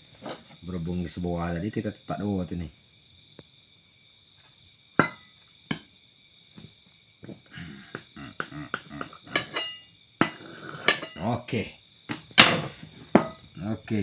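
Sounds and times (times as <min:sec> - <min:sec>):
crickets trilling: 0:00.0 - 0:14.0.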